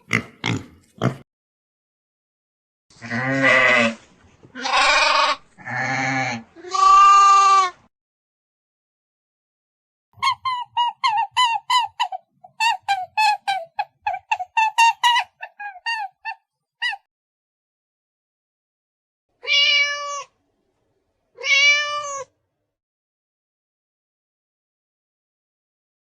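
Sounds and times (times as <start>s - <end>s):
goat bleating: 3.0s - 4.0s, 4.6s - 7.8s.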